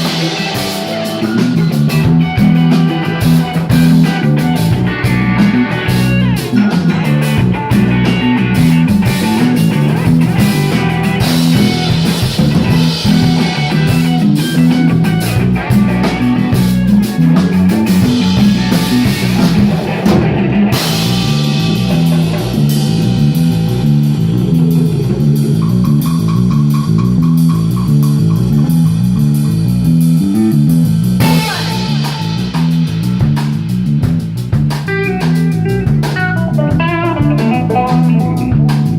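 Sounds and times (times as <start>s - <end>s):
bass guitar: 0.0s - 38.9s
drum kit: 0.0s - 38.9s
electric guitar: 0.0s - 38.9s.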